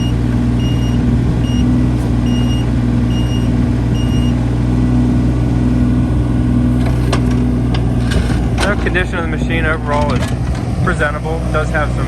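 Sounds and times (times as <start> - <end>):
travel alarm beeping: 0.0 - 4.4
diesel engine running steadily: 0.0 - 12.0.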